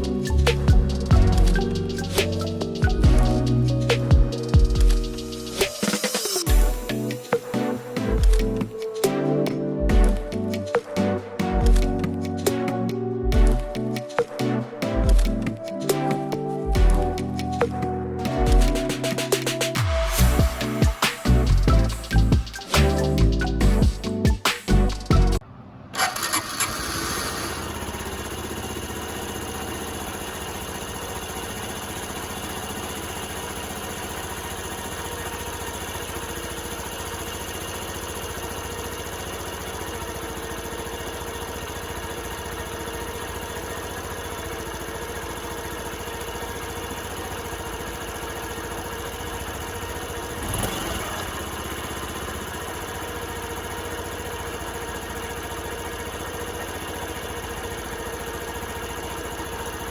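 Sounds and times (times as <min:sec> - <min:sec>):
motorcycle engine idling: 0:00.0 - 0:05.6, 0:06.5 - 0:09.0, 0:26.0 - 0:59.9.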